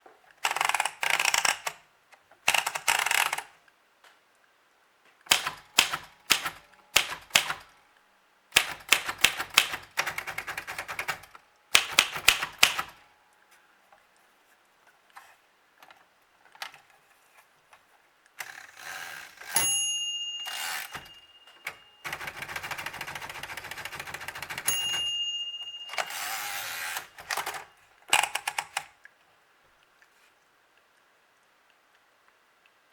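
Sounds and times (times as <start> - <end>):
typewriter carriage noise: 5.3 - 7.7, 8.6 - 13.0, 20.3 - 28.9
typewriter key strikes: 5.3 - 7.7, 8.6 - 13.0, 19.6 - 28.9
typewriter bell ringing: 19.5 - 27.8.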